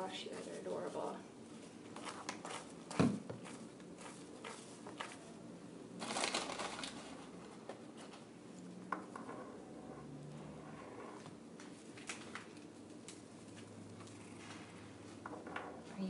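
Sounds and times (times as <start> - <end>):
crinkly rustle: 6.0 - 8.2.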